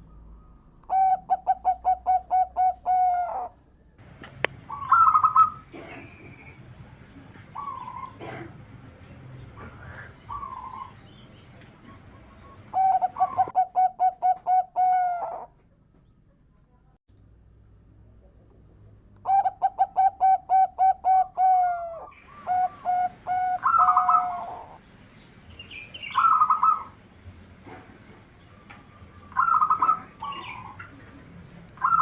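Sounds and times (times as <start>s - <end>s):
dove cooing song: 0.0s - 3.6s, 4.4s - 15.6s, 19.2s - 24.8s, 25.7s - 27.0s, 28.4s - 32.0s.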